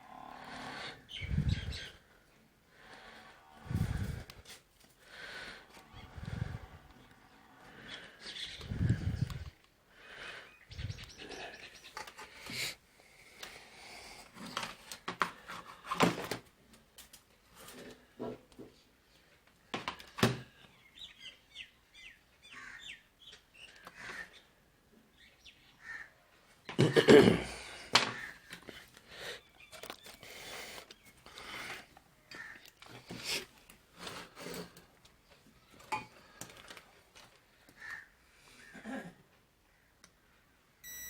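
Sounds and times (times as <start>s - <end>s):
birds chirping: 0.1s - 2.2s, 5.8s - 9.6s, 10.2s - 12.6s, 20.6s - 26.8s, 27.6s - 33.3s.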